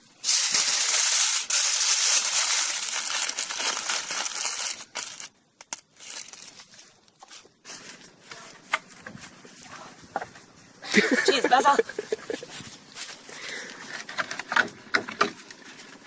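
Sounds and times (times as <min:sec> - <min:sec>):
aluminium foil crinkling: 0:00.2 - 0:08.6.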